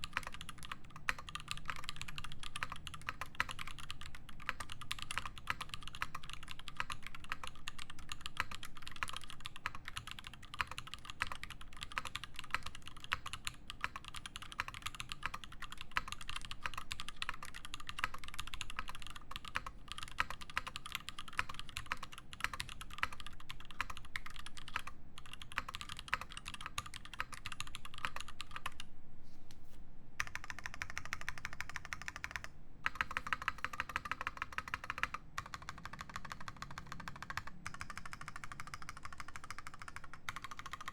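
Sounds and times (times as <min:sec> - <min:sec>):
mechanical keyboard typing: 0:00.0 - 0:28.8, 0:30.2 - 0:40.9.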